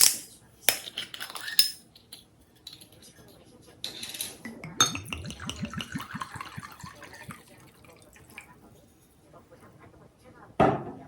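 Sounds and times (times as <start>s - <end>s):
liquid pouring and gurgling: 4.4s - 8.7s.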